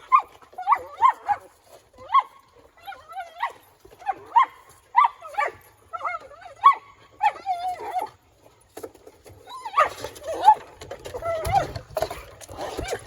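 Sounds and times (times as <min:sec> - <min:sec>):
dog whining and yipping: 0:00.0 - 0:08.2, 0:09.4 - 0:13.0.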